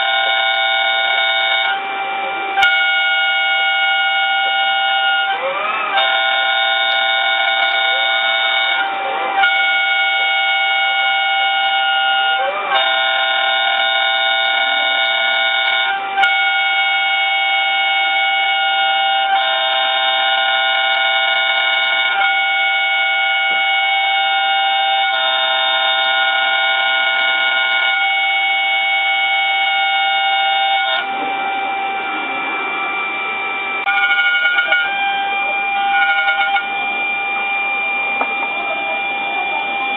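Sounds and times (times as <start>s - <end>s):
cnc router motor whine: 0.0s - 39.9s.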